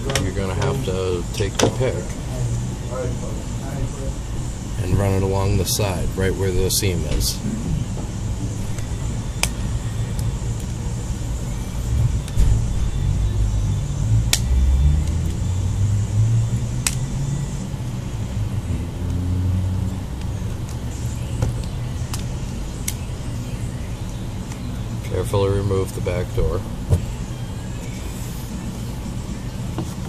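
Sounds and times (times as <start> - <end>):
steady low rumble: 0.0 - 30.0
plastic clips snapping: 16.8 - 17.0.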